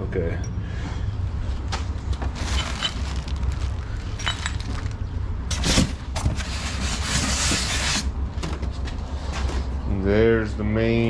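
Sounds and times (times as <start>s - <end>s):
packing crunching: 1.9s - 8.0s
scraping rustle of packing: 2.2s - 8.1s.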